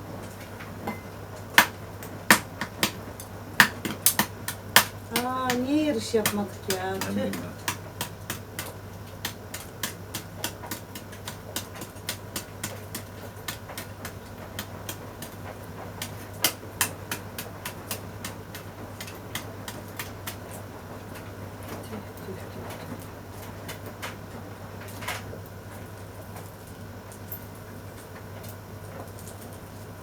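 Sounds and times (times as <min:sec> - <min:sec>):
steady low hum: 0:00.0 - 0:30.0
sharp clicks and cracks: 0:01.4 - 0:21.9.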